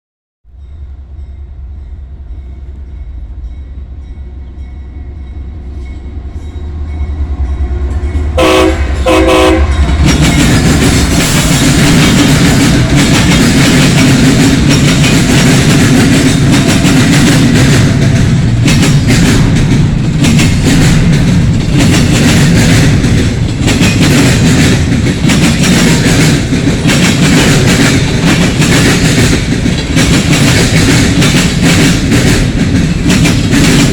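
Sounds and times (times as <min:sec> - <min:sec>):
freight train rumbling: 0:00.5 - 0:33.9
wheels on rails: 0:06.9 - 0:33.9
train horn blasts: 0:07.6 - 0:10.0.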